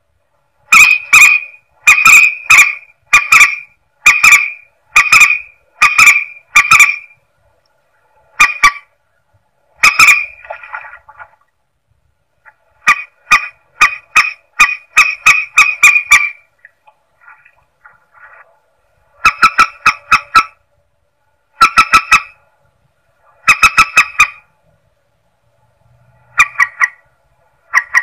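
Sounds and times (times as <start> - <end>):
bird sharp calls: 0.7 - 7.2, 9.8 - 10.9, 12.8 - 16.5.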